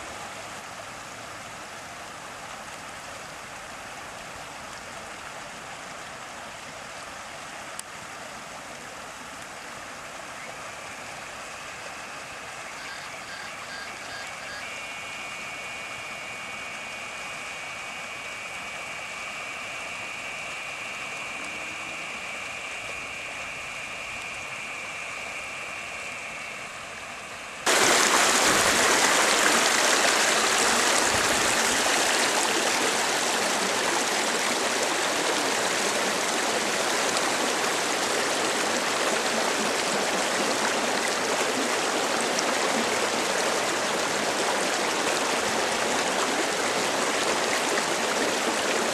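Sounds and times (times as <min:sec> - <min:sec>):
steady high tone: 0:19.8 - 0:35.9
floodwater rushing: 0:27.7 - 0:48.9.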